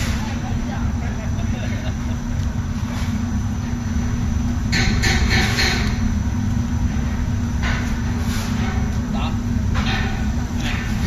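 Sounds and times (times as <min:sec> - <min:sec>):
industrial machinery rumbling: 0:00.0 - 0:11.0.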